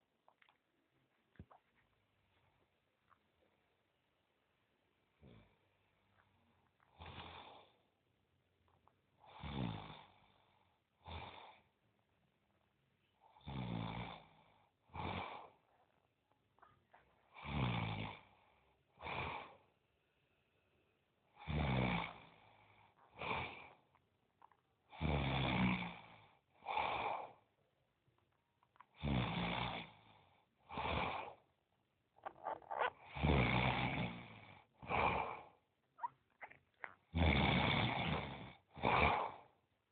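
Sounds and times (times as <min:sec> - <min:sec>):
person snoring heavily: 0:30.6 - 0:31.4, 0:32.2 - 0:35.5, 0:36.4 - 0:39.5.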